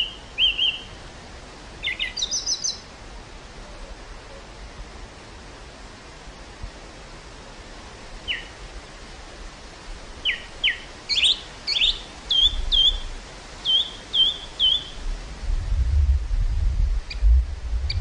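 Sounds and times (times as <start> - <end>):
songbird singing: 0.0 - 2.9, 8.2 - 8.9, 10.2 - 15.1, 17.0 - 18.0
low wind rumble: 0.0 - 18.0
wind hiss: 0.0 - 18.0.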